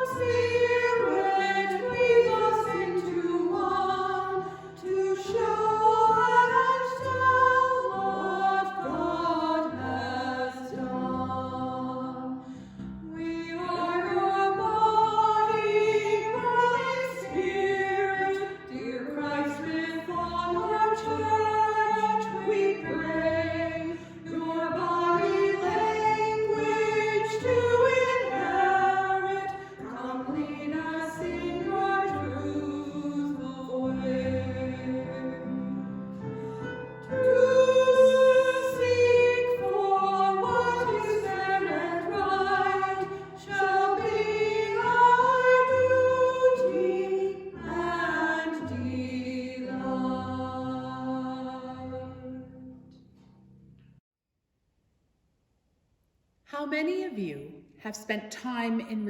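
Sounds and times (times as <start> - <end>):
choir singing a slow hymn: 0.0 - 52.8
choir breaths: 4.3 - 4.8, 12.3 - 13.1, 23.0 - 24.6, 29.4 - 32.2, 33.2 - 38.8, 39.4 - 46.6.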